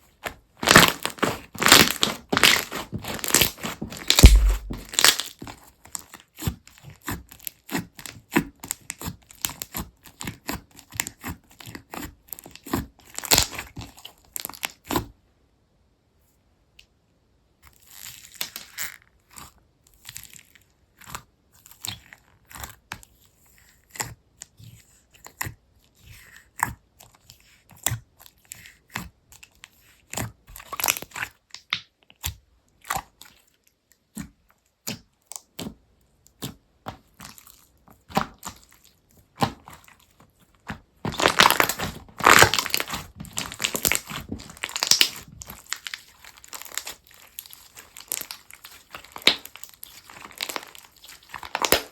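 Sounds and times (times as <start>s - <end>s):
slime crackling and popping: 0.6s - 6.2s, 7.0s - 15.0s, 18.0s - 18.8s, 30.1s - 33.4s, 36.4s - 51.9s.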